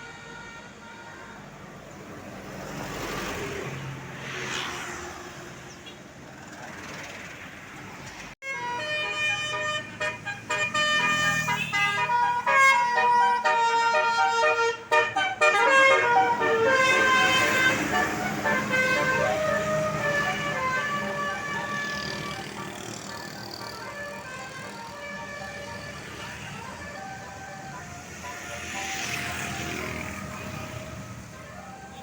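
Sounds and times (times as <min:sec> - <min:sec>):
vehicle passing: 0:01.7 - 0:13.4, 0:14.7 - 0:32.0
bus musical air horn tune: 0:08.4 - 0:28.0.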